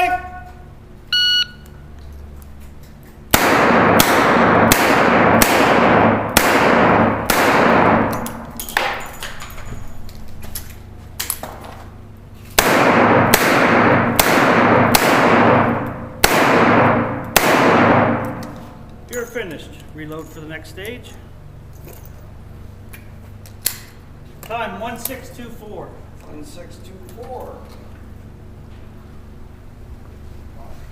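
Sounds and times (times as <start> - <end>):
revolver shots echoing: 3.3 - 9.2, 12.6 - 18.7.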